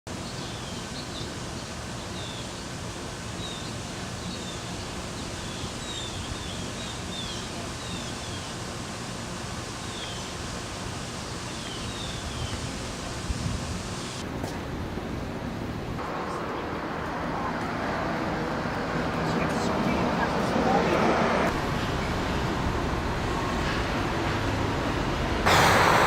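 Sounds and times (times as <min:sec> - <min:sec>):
birds chirping: 0:00.1 - 0:08.8, 0:09.8 - 0:13.2
outdoor background rush: 0:00.1 - 0:26.0.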